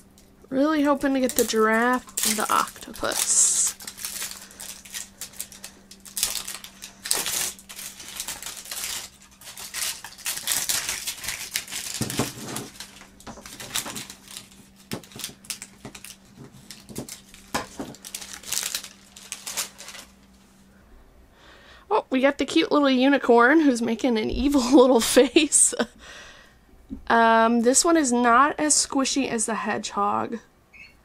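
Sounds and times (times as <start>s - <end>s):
plastic wrapping crinkling: 0.1s - 20.4s.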